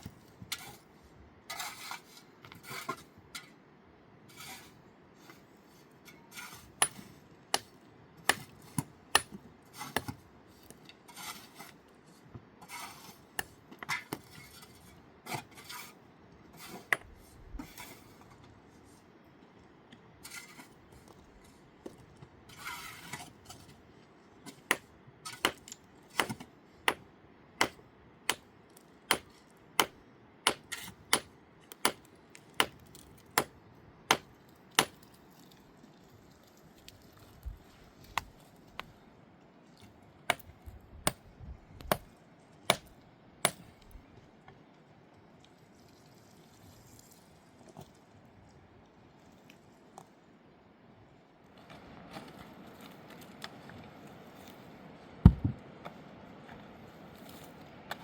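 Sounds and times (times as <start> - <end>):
hard object knocking: 55.3 - 55.6.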